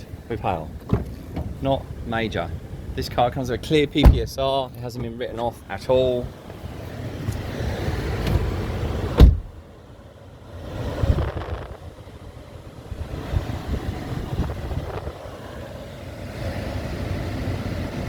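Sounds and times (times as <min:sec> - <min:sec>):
low rumbling inside car: 0:00.0 - 0:18.0
car door shutting: 0:00.8 - 0:01.8, 0:03.9 - 0:04.4, 0:06.3 - 0:09.6.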